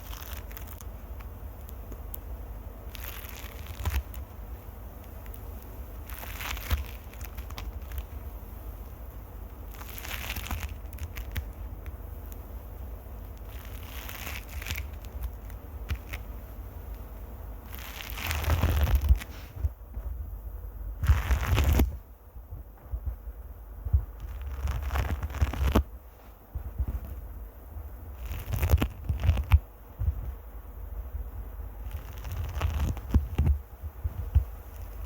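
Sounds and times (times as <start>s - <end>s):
fingers scratching on microphone: 17.7s - 20.1s, 21.0s - 22.0s, 23.9s - 25.9s, 26.6s - 27.2s, 28.1s - 30.3s, 31.8s - 35.0s.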